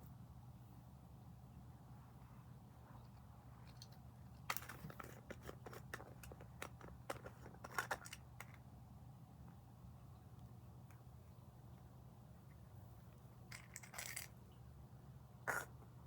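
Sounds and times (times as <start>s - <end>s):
faint steady hum: 0.0s - 16.0s
small clicks and crackles: 2.9s - 8.6s, 12.5s - 14.4s.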